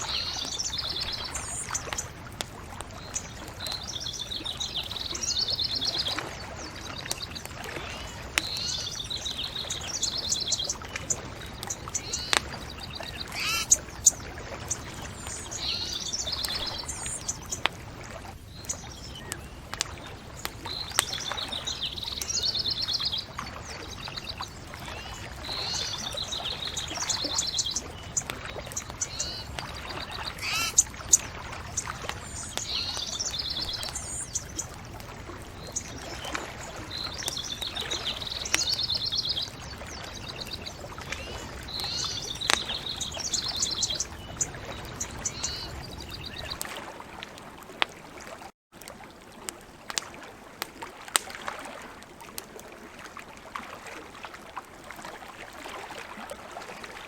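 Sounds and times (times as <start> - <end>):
birds singing trilled phrases: 0.0 - 2.2, 3.0 - 17.7, 18.5 - 34.8, 35.6 - 46.6
bonfire crackling pops: 0.4 - 4.9, 8.2 - 15.6, 16.4 - 21.4, 26.4 - 36.0, 40.4 - 46.7.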